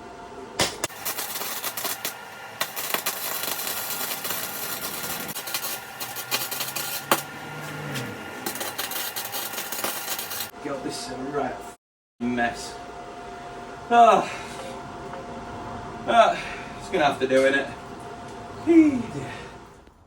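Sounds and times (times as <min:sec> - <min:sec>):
arc welding crackle: 0:00.8 - 0:10.5.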